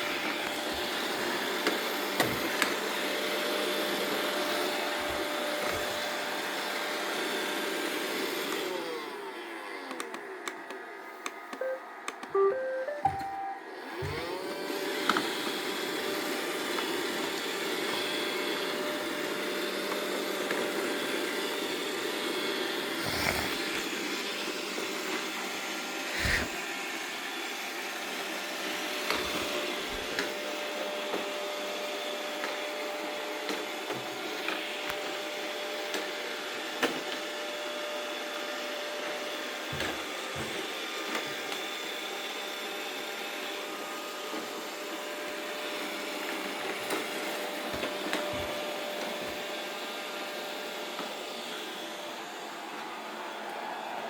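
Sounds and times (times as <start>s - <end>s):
robot vacuum motor whine: 0.0s - 53.4s
electronic beeps: 11.6s - 13.6s.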